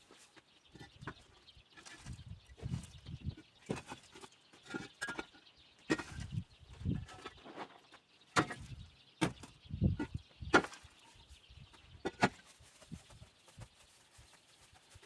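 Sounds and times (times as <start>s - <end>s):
sharp knocks with dull thuds: 8.4s - 10.9s.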